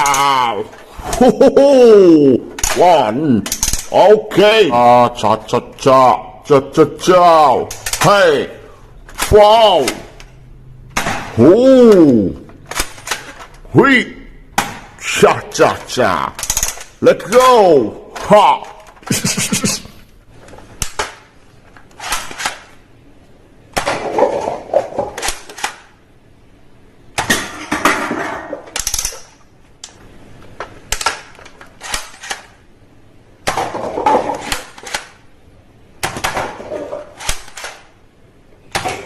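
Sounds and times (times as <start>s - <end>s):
toy guns firing: 0.0s - 0.4s, 2.6s - 4.0s, 12.6s - 13.6s, 15.7s - 17.4s, 25.1s - 26.0s, 28.7s - 29.4s.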